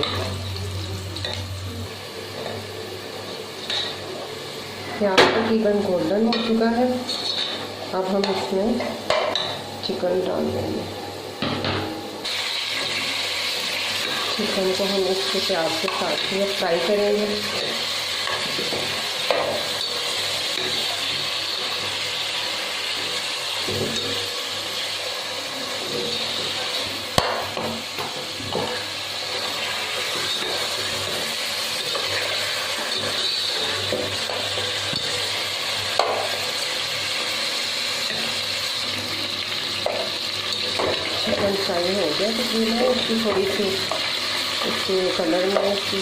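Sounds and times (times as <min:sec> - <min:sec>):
chicken sizzling in oil: 0:12.1 - 0:46.0.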